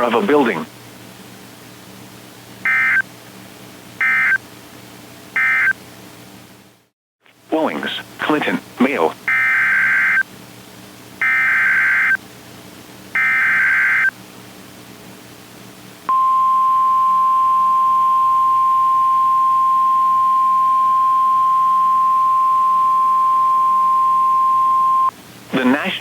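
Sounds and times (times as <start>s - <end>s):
steady warning alarm tone: 2.7s - 3.0s, 4.0s - 4.4s, 5.4s - 5.8s, 9.3s - 10.2s, 11.2s - 12.2s, 13.2s - 14.1s, 16.1s - 25.1s
warbling data bursts: 2.7s - 3.0s, 4.0s - 4.4s, 5.4s - 5.7s, 9.3s - 10.2s, 11.2s - 12.2s, 13.2s - 14.1s.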